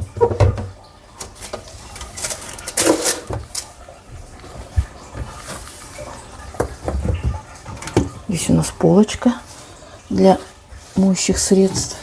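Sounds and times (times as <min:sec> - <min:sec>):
cloth rubbing kitchen surfaces: 0:04.1 - 0:06.5, 0:08.5 - 0:12.0.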